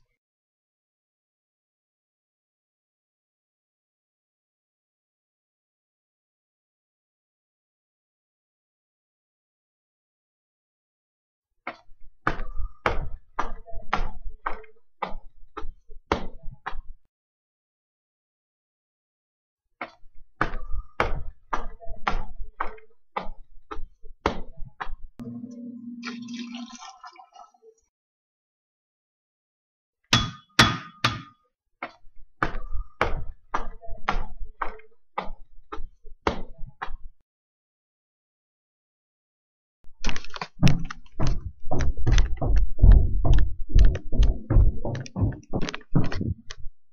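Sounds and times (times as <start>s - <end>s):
knocks with low thud: 40.6s - 46.8s.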